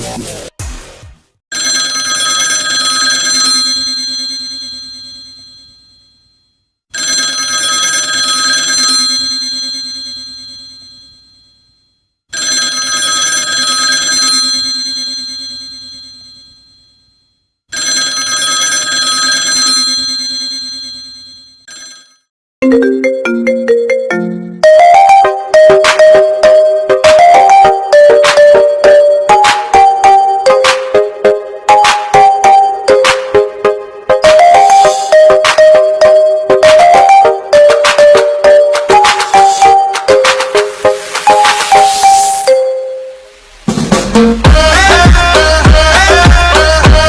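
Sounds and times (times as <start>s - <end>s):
telephone bell ringing: 1.5s - 6.3s, 6.9s - 22.3s, 23.1s - 43.4s
ringtone with short stepping notes: 22.7s - 47.0s.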